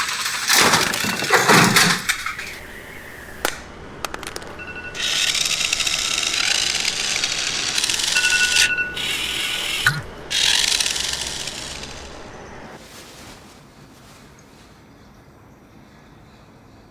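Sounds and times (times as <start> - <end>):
rapid mechanical rattling: 0.0 - 12.8.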